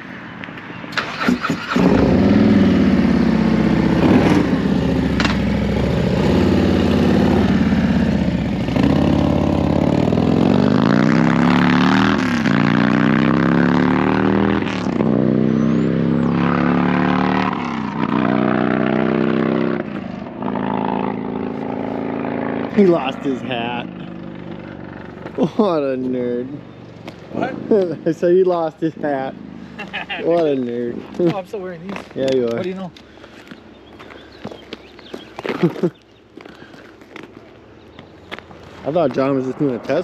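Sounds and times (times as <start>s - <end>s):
motorcycle engine revving: 0.9s - 31.3s.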